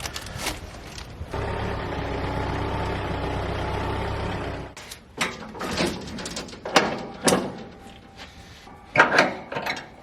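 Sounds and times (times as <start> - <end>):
tractor engine idling: 1.3 - 4.8.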